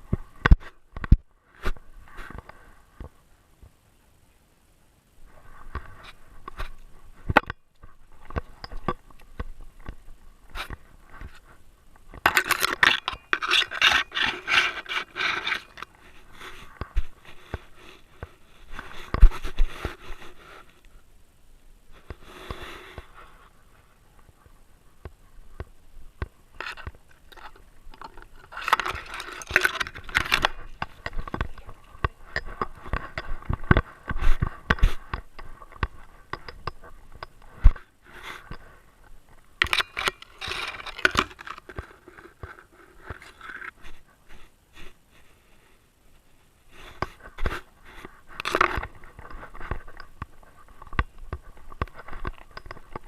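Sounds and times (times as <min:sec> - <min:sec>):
rustles: 0:00.0 - 0:53.0
camera mount scraping and bumping: 0:12.2 - 0:15.9, 0:26.2 - 0:37.8, 0:39.6 - 0:43.8, 0:48.4 - 0:53.0.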